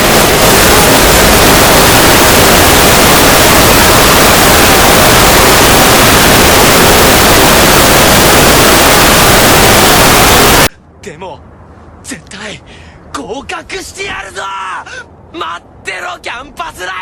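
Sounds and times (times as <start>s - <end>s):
loud static noise: 0.0s - 11.2s.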